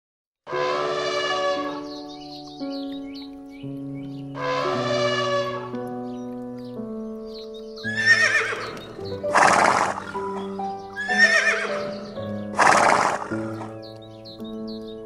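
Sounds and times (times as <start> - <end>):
horse whinnying: 0.5 - 1.9, 4.4 - 5.7, 7.8 - 13.9
background music sustained notes: 0.5 - 15.0
horse blowing breath: 7.9 - 13.8.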